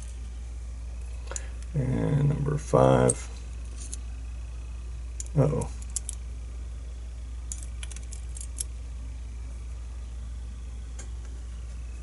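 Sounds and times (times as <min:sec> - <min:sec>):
steady low hum: 0:00.0 - 0:12.0
small metallic clicks of lock parts: 0:05.2 - 0:06.2, 0:07.5 - 0:08.7.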